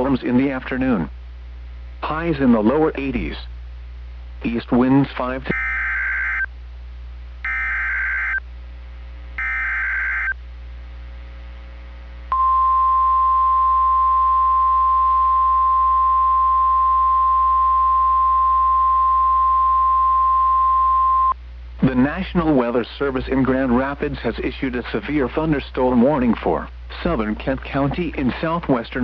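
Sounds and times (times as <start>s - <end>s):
steady warning alarm tone: 5.5s - 6.5s, 7.4s - 8.4s, 9.4s - 10.4s
warbling digital data bursts: 7.5s - 8.4s, 9.4s - 10.3s.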